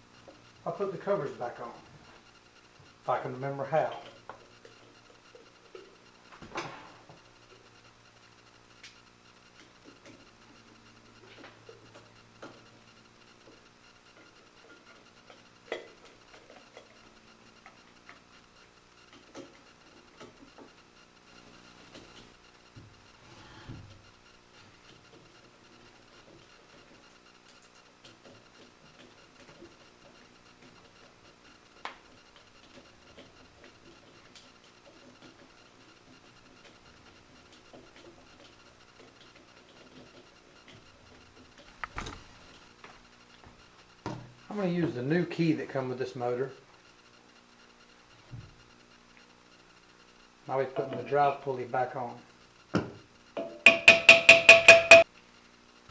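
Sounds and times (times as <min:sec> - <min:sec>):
clicks and taps of tools: 0:52.8 - 0:55.0
sharp knock: 0:53.7 - 0:55.0.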